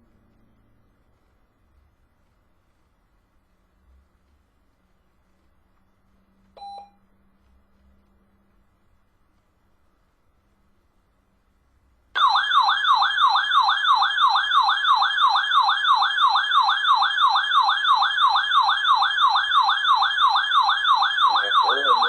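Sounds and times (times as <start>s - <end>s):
warbling alert siren: 12.2s - 22.0s.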